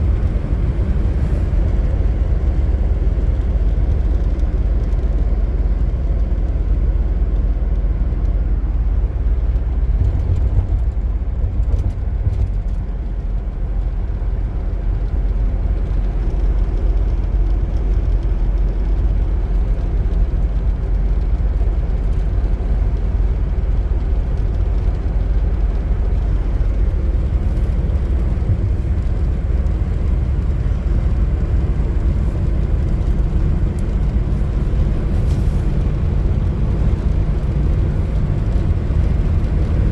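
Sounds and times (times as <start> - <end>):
pickup truck engine rumble: 0.0 - 39.9
road noise: 0.0 - 39.9.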